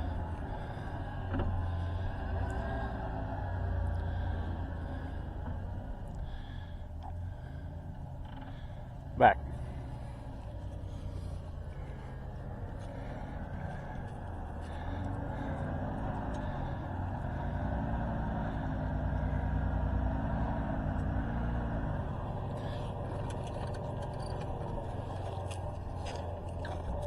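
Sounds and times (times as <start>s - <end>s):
truck engine running: 0.0s - 27.0s
clicks and rattles: 23.0s - 27.0s.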